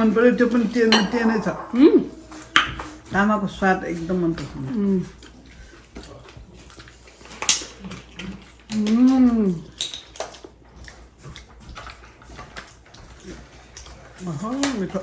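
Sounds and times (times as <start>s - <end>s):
eating clicks and smacks: 4.3s - 15.0s.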